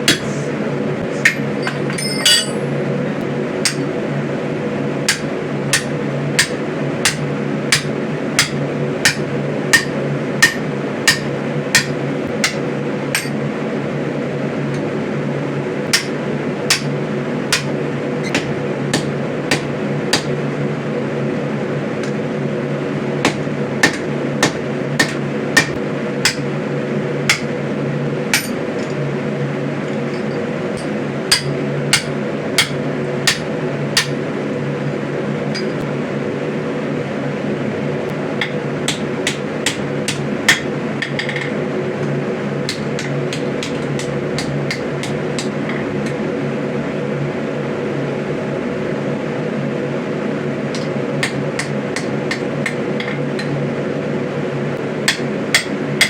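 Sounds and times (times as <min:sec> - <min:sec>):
hammer striking on anvil: 0:00.0 - 0:00.3, 0:01.2 - 0:02.7, 0:03.6 - 0:03.9, 0:05.1 - 0:13.4, 0:15.9 - 0:16.9, 0:17.5 - 0:17.7, 0:23.3 - 0:26.4, 0:27.3 - 0:27.5, 0:28.3 - 0:28.6, 0:30.8 - 0:34.2, 0:55.1 - 0:55.8
steady hum: 0:00.0 - 0:56.0.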